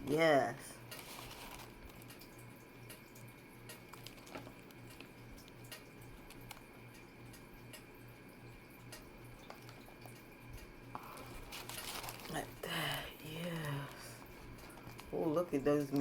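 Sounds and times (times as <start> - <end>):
wet clicks of food handled: 0.8 - 7.9, 8.8 - 12.3, 13.5 - 15.2.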